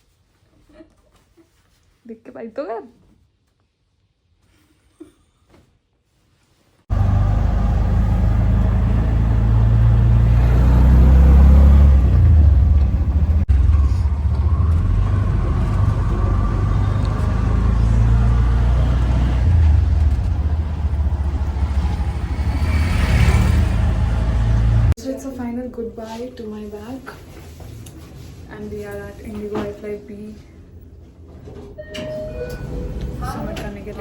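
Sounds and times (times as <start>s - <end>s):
car rumble inside cabin: 6.9s - 25.0s.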